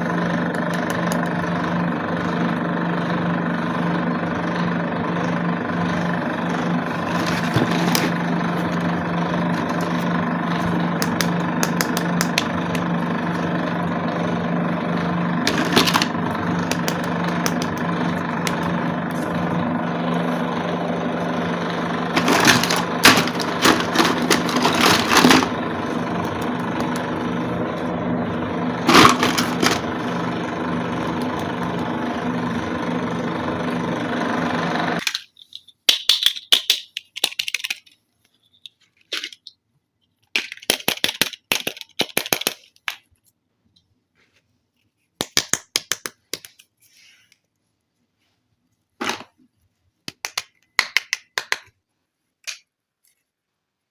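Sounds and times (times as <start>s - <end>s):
motor hum: 0.0s - 35.0s
plastic toy pieces clicking: 35.0s - 43.3s, 45.2s - 46.7s.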